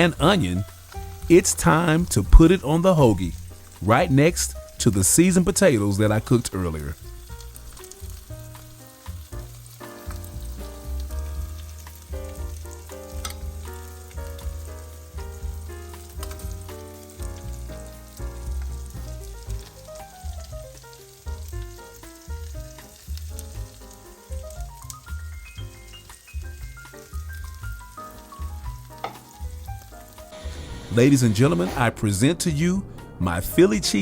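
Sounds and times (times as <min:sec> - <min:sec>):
food sizzling in a frying pan: 0:00.0 - 0:31.8
melody over deep bass: 0:30.3 - 0:34.0.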